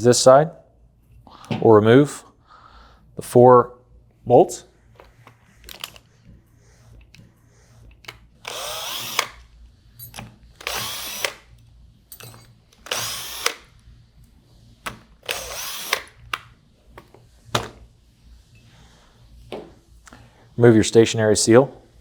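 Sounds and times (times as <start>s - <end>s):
power driver whirring: 7.9s - 13.8s, 14.8s - 16.5s.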